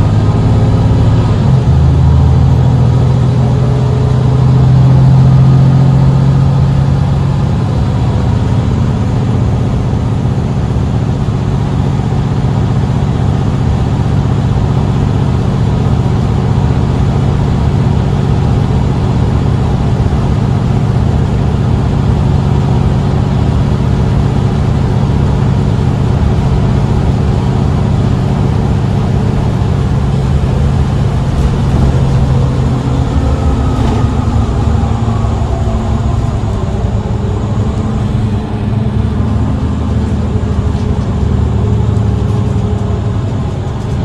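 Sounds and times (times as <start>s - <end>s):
bus engine running: 0.0s - 44.0s
faint whine: 16.1s - 43.8s.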